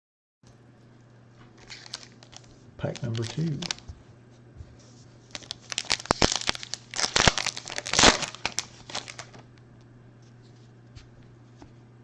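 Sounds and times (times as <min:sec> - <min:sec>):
plastic wrapper tearing and crinkling: 0:01.6 - 0:03.9, 0:05.3 - 0:09.5.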